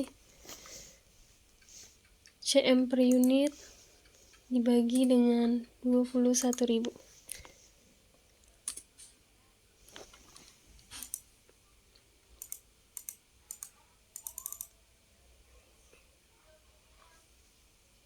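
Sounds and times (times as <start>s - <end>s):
computer keyboard keystrokes: 3.1s - 3.4s, 4.9s - 5.2s, 6.4s - 6.7s, 8.6s - 8.9s, 10.9s - 11.2s, 12.4s - 14.7s.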